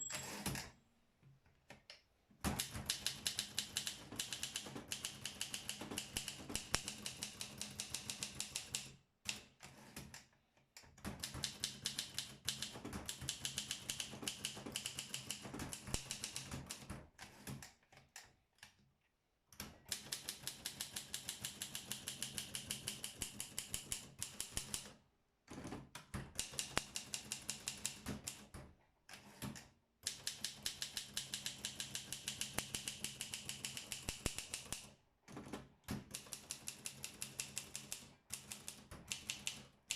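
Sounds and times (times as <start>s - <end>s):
typewriter keys striking rapidly: 2.6s - 8.9s, 11.2s - 16.8s, 20.0s - 24.8s, 26.4s - 28.4s, 30.1s - 34.9s, 36.1s - 39.6s.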